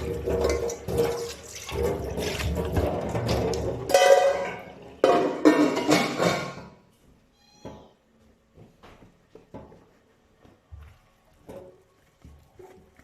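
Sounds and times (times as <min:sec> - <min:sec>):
running tap water: 0:00.0 - 0:03.9
cat meowing: 0:07.3 - 0:08.0.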